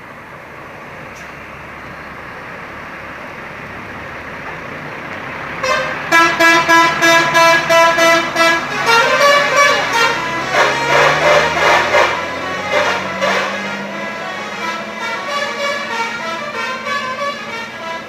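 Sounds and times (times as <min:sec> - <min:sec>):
bus engine: 0:00.0 - 0:18.0
road noise: 0:00.0 - 0:18.0
multi-tone musical air horn: 0:05.6 - 0:18.0.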